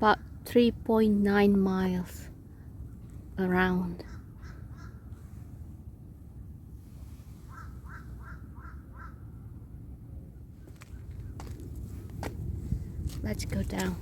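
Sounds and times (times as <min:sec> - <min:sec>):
steady low rumble: 0:00.0 - 0:14.0
bird calling: 0:04.0 - 0:05.2, 0:07.4 - 0:09.3.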